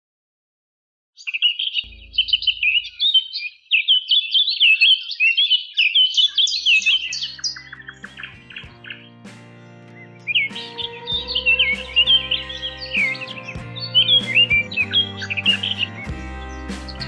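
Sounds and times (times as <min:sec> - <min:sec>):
small birds chirping: 0:01.2 - 0:17.0
background music with low drone: 0:06.6 - 0:17.0.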